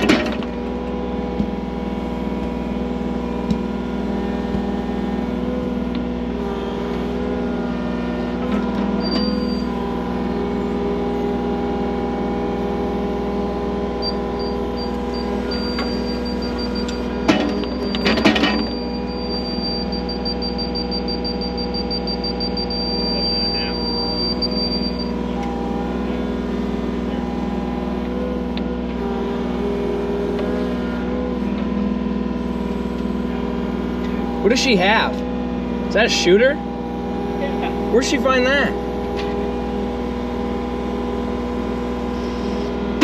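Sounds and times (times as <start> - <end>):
skid loader engine running: 0.0 - 43.0
high-pitched warning beep: 9.0 - 9.8, 14.0 - 17.0, 17.6 - 25.2.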